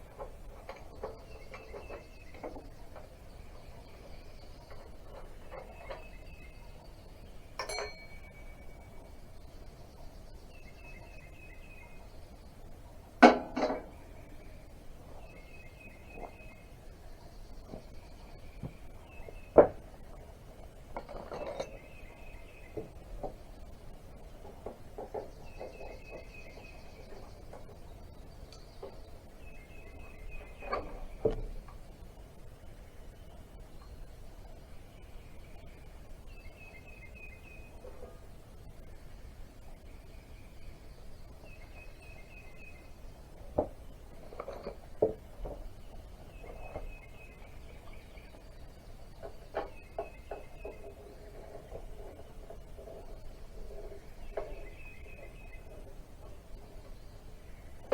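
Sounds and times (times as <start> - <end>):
birds chirping faintly: 0.0 - 57.9
faint high chirping: 0.1 - 12.8
hand tools clinking on metal: 7.6 - 8.6, 21.0 - 22.0.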